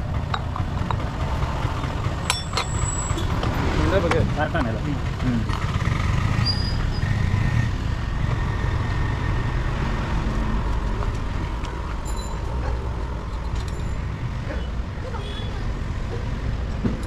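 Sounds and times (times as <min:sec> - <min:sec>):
motor vehicle engines rumbling: 0:00.0 - 0:17.0.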